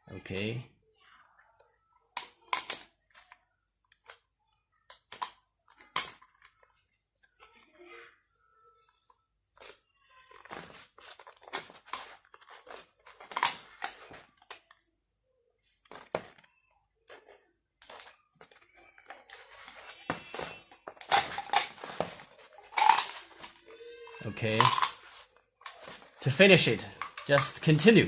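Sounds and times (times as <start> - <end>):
plastic spiral crackling and rustling: 8.4 - 15.0, 15.6 - 28.0.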